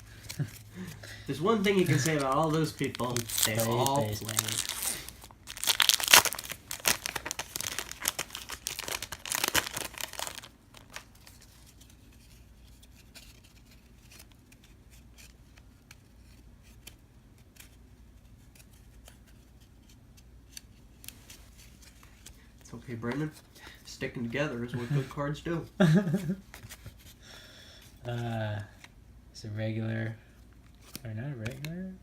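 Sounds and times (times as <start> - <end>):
wrapper tearing and crinkling: 1.3 - 11.5
cards clicking as handled: 30.7 - 31.8.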